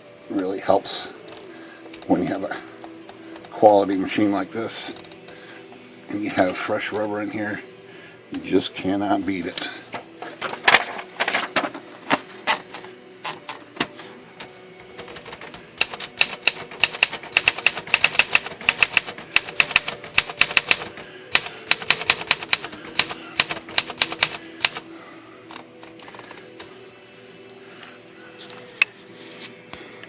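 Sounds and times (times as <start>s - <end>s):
manual typewriter typing: 15.0s - 24.9s, 25.5s - 26.6s.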